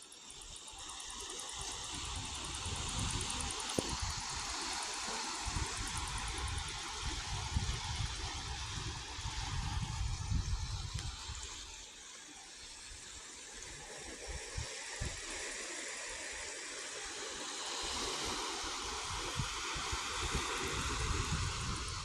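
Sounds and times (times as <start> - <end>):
steady rushing noise: 1.8 - 11.8, 18.6 - 22.0
wind buffeting microphone: 2.0 - 11.8, 19.0 - 22.0.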